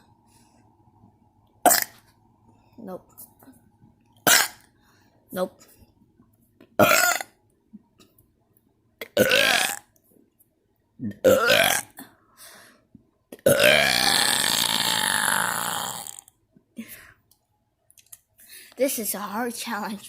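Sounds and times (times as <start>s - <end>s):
person burping: 1.6s - 2.0s, 4.2s - 4.6s, 6.8s - 7.4s, 9.0s - 9.9s, 11.0s - 12.2s, 13.3s - 16.3s.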